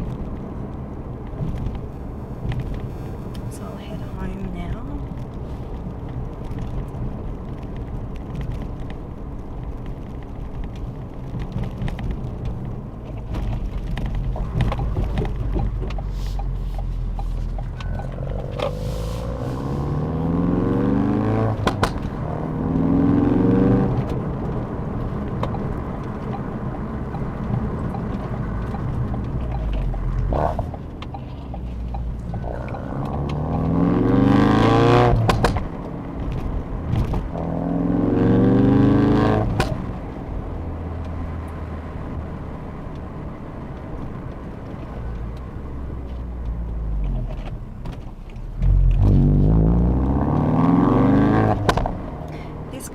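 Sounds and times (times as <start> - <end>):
exhaust pops: 0.0 - 20.7, 21.4 - 22.4, 23.8 - 37.6, 39.1 - 42.2, 51.3 - 52.9
car engine revving through gears: 1.2 - 5.2, 16.8 - 42.2, 48.6 - 52.9.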